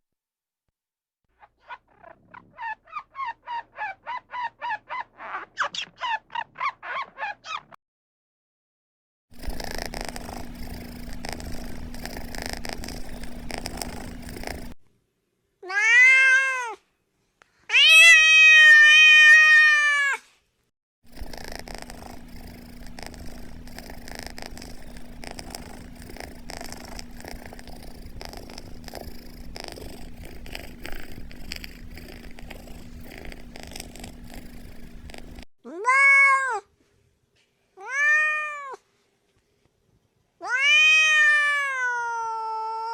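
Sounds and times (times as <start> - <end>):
cat purring: 1.7 - 2.8, 9.3 - 14.8, 21.1 - 35.5
cat meowing: 15.6 - 16.8, 17.7 - 20.2, 35.3 - 36.7, 37.8 - 38.8, 40.4 - 42.9.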